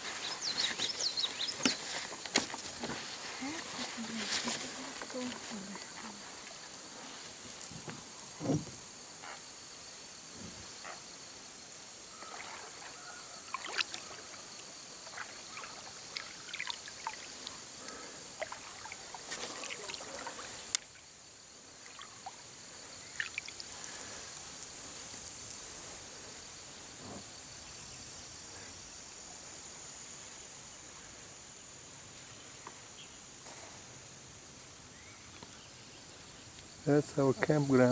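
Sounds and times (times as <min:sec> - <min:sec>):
high insect buzz: 0:00.0 - 0:37.9
paddle splashing in water: 0:12.1 - 0:21.0.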